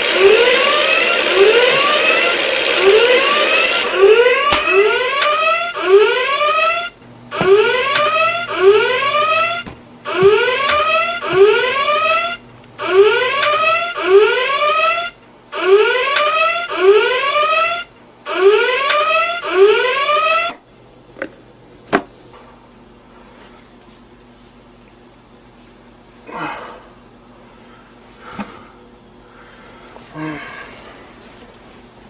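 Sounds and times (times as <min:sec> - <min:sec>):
electronic alarm chirps: 0:00.2 - 0:20.6.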